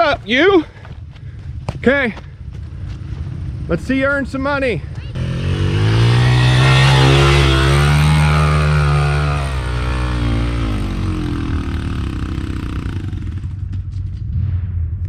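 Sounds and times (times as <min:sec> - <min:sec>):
dirt bike engine revving: 0:05.1 - 0:13.7
low engine drone: 0:05.1 - 0:13.8.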